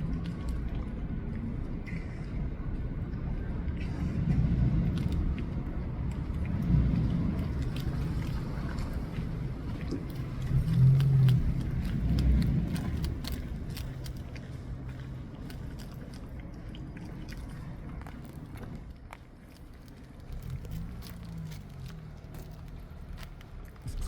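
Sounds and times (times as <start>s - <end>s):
passing vehicle engine rumble: 0.0s - 24.0s
small sharp crunching clicks: 10.0s - 16.2s, 17.2s - 23.8s.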